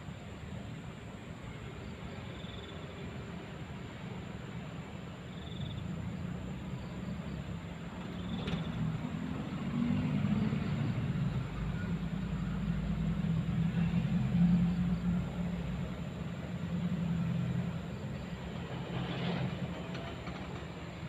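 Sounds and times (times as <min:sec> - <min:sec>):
vehicle rumbling past: 0:05.8 - 0:21.0.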